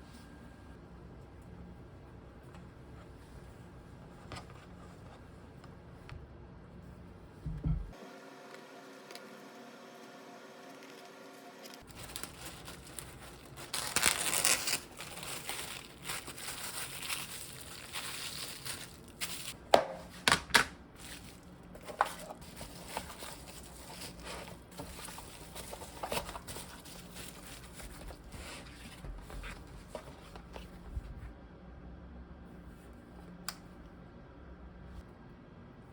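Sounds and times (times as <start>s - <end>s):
packaging crinkling and rustling: 10.7s - 30.8s.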